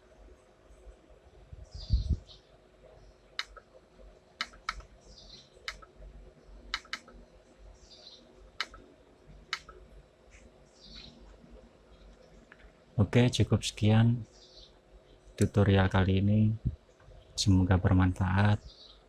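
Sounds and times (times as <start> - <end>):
computer mouse clicks: 3.4 - 3.7, 4.4 - 4.9, 5.7 - 5.9, 6.7 - 7.2, 8.6 - 8.8, 9.5 - 11.4.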